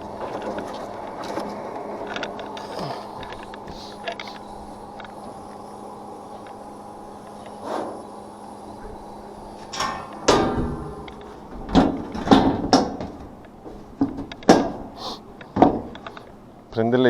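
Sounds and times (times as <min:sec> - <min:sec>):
steady hum: 0:00.0 - 0:17.0
sheet metal clanks: 0:08.8 - 0:16.4.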